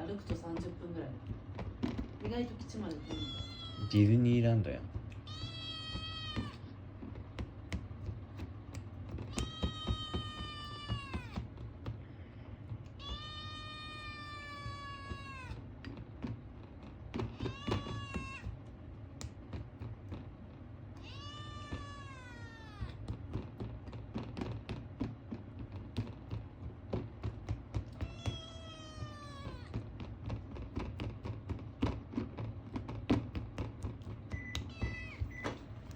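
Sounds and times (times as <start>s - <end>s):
kitten meowing: 2.8s - 4.1s, 5.1s - 6.7s, 9.3s - 11.4s, 12.9s - 15.6s, 17.3s - 18.5s, 21.0s - 23.0s, 28.0s - 29.8s, 34.5s - 35.4s.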